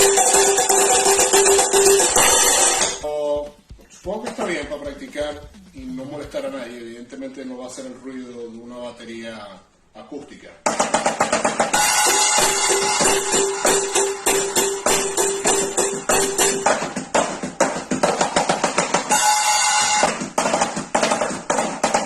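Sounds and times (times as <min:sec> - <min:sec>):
cymbals clashing and ringing: 0:00.0 - 0:03.0, 0:11.7 - 0:17.0, 0:19.0 - 0:20.2
taps on drum practice pads: 0:00.0 - 0:07.2, 0:10.7 - 0:22.0.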